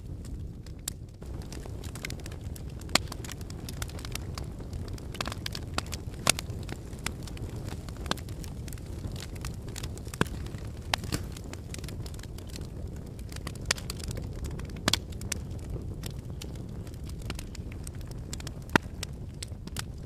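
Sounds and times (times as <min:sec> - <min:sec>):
wood fire crackling: 0:00.0 - 0:20.0.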